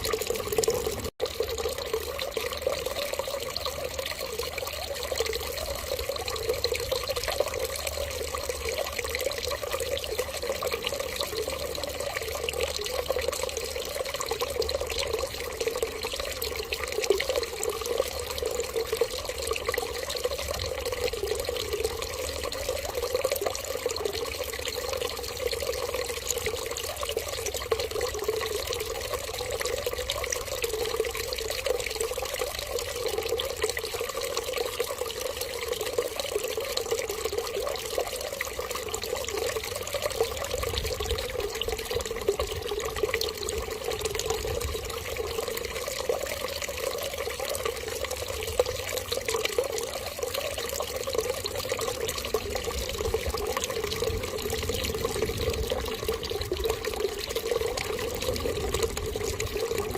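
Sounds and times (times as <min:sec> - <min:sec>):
water running: 0:00.0 - 0:22.4.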